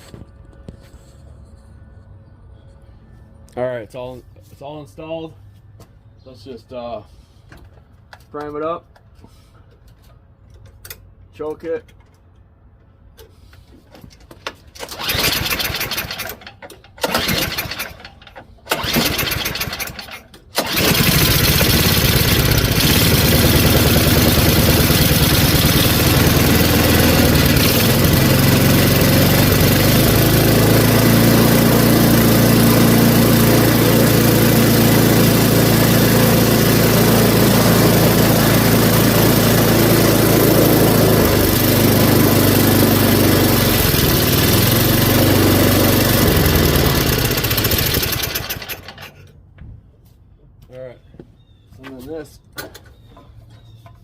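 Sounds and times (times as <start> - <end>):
pull-start cranking: 14.4 - 37.2, 41.0 - 49.2
snowblower engine running: 14.8 - 49.2.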